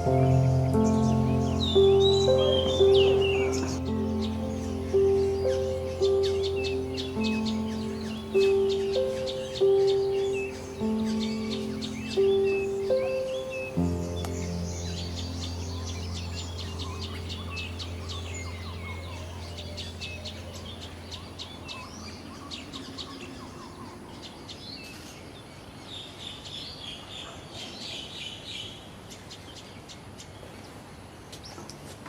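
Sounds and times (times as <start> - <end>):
low steady hum: 0.0 - 22.5
songbirds chirping: 0.0 - 32.0.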